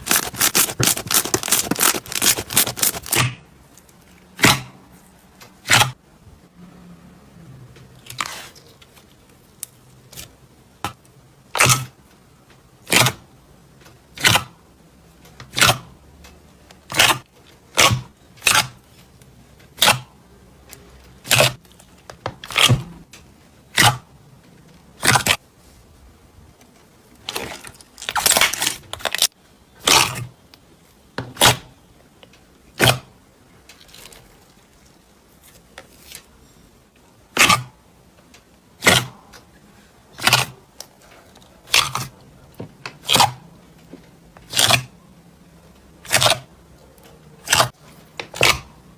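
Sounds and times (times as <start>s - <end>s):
crunchy slime crackling: 0.0s - 4.7s, 27.2s - 30.3s, 33.7s - 36.3s, 47.4s - 48.7s.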